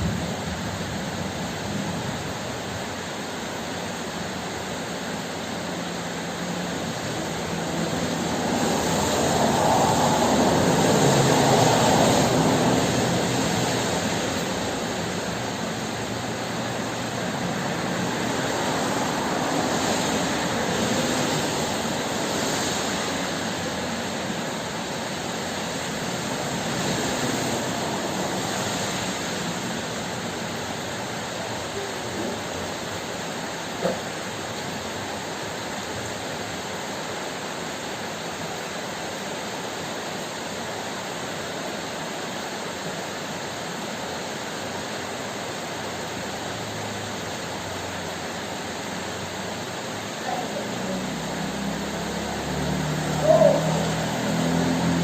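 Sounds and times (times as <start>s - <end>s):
heavy rain hissing: 0.0s - 55.0s.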